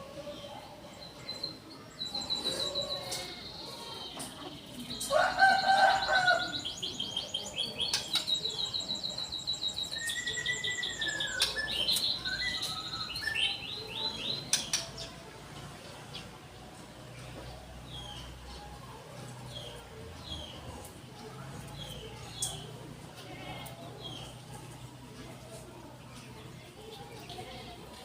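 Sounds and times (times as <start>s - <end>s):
canary singing trills: 1.0s - 15.2s.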